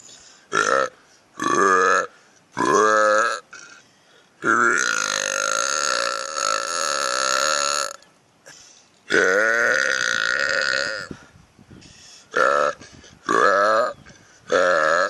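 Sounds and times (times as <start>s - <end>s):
man belching: 0.5s - 3.8s, 4.4s - 8.0s, 9.1s - 11.2s, 12.3s - 15.0s.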